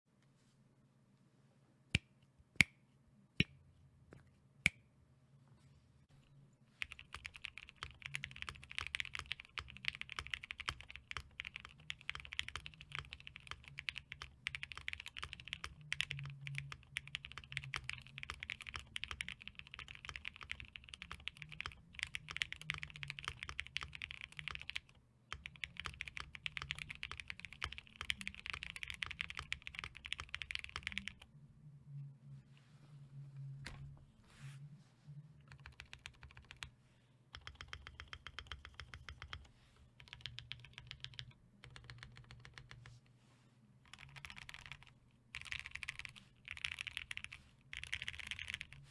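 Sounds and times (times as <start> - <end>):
fast typing on mechanical keyboard: 6.8 - 31.2, 35.5 - 36.7, 37.3 - 42.8, 43.9 - 48.8.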